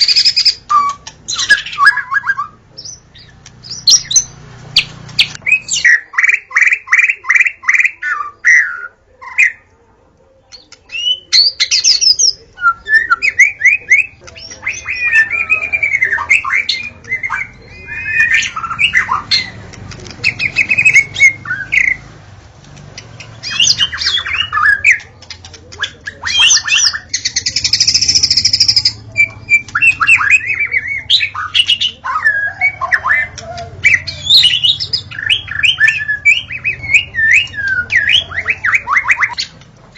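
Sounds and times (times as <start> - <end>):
bird singing whistles and trills: 0.0 - 9.6, 10.9 - 19.6, 20.2 - 22.0, 23.0 - 25.1, 25.8 - 39.5
harsh rasping bird call: 12.9 - 22.1.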